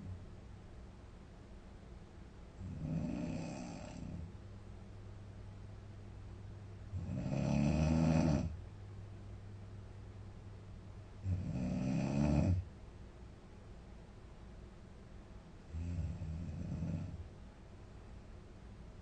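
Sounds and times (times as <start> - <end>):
woman snoring: 2.6 - 4.3, 7.0 - 8.6, 11.2 - 12.6, 15.7 - 17.2.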